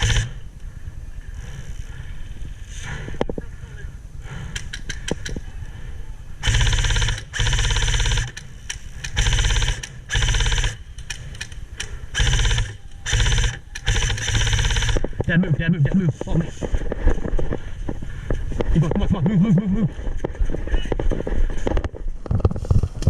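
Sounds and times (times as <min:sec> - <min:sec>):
airsoft rifle firing bursts: 0:00.0 - 0:00.4, 0:06.4 - 0:15.4
sharp clicks: 0:04.5 - 0:05.4, 0:06.4 - 0:15.4.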